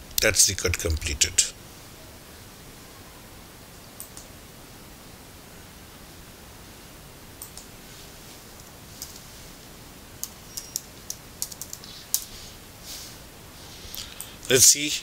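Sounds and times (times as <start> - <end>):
faint steady hiss: 0.0 - 15.0
light irregular clicks: 3.8 - 4.3, 7.4 - 7.7, 10.2 - 12.3.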